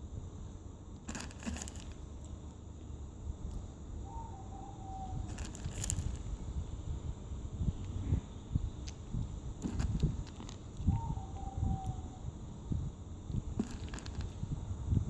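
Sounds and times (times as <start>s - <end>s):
low steady rumble: 0.0s - 15.0s
kittens crunching dry kibble: 1.0s - 2.3s, 5.3s - 6.4s, 9.6s - 10.9s, 13.5s - 14.5s.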